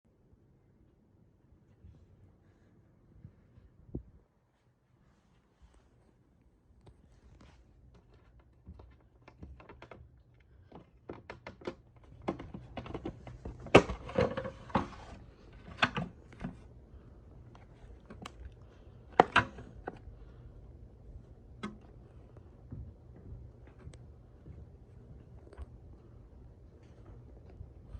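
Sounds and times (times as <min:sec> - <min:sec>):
hard plastic parts clicking: 0:08.7 - 0:16.6, 0:17.5 - 0:20.0.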